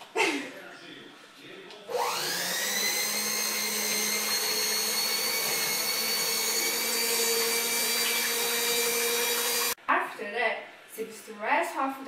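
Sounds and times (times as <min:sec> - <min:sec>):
electric mixer motor whine: 0:01.9 - 0:09.8.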